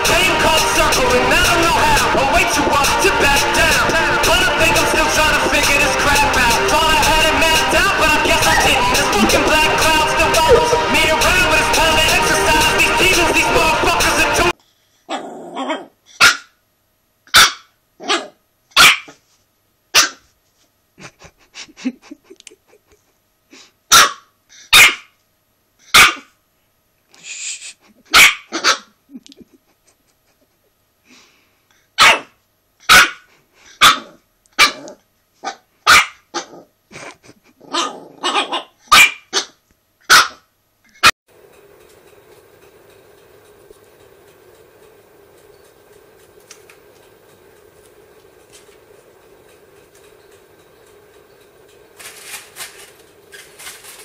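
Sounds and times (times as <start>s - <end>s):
dog growling: 8.4s - 11.1s, 15.1s - 16.0s, 36.4s - 36.7s, 37.5s - 38.7s
dog barking: 10.4s - 10.9s, 15.1s - 16.5s, 17.3s - 19.2s, 20.0s - 20.2s, 23.9s - 25.1s, 25.9s - 26.3s, 28.1s - 28.9s, 32.0s - 36.6s, 37.7s - 40.4s.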